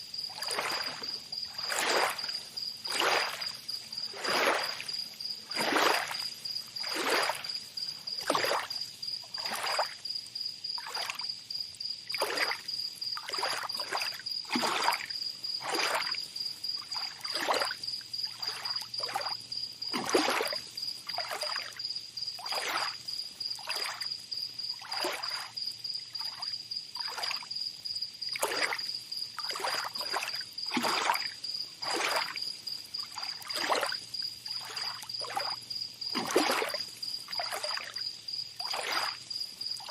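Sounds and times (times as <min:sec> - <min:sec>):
insect trilling: 0:00.1 - 0:10.0
small waves lapping on beach: 0:00.1 - 0:10.0, 0:12.1 - 0:21.8, 0:22.4 - 0:24.1, 0:24.7 - 0:25.6, 0:28.3 - 0:39.9.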